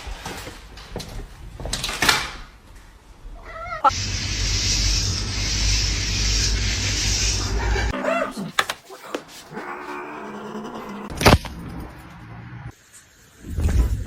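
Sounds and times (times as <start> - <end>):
cat meow: 3.4 - 3.9.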